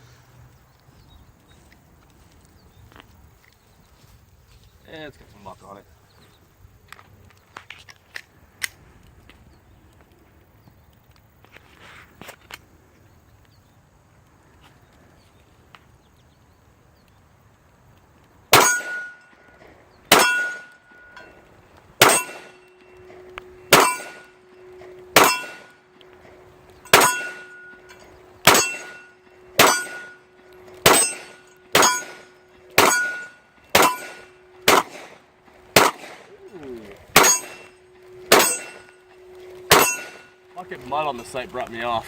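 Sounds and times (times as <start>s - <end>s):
pistol shots: 18.5s - 19.3s, 20.1s - 20.8s, 22.0s - 22.7s, 23.7s - 24.3s, 25.2s - 25.8s, 26.9s - 27.8s, 28.4s - 30.2s, 30.8s - 36.3s, 37.1s - 37.7s, 38.3s - 39.0s, 39.7s - 40.3s
steel target clanging: 18.5s - 19.5s, 20.1s - 21.4s, 22.0s - 36.3s, 37.1s - 41.9s.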